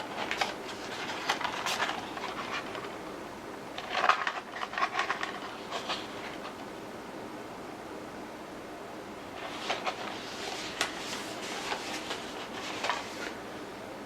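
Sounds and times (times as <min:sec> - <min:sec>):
packaging rustling and clicking: 0:00.0 - 0:03.0, 0:03.8 - 0:06.7, 0:09.4 - 0:13.4.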